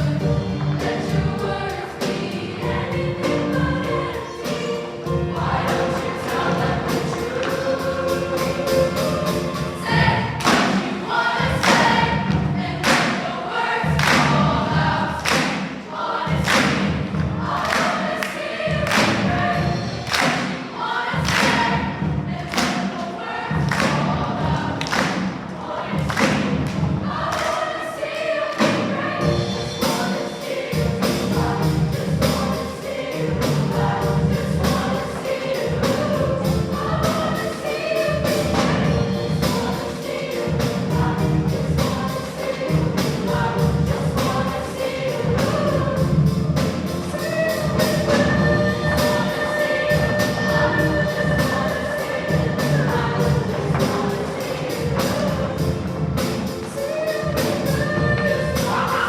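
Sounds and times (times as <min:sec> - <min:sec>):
choir singing with accompaniment: 0:00.0 - 0:59.0
steady beat: 0:10.4 - 0:27.7.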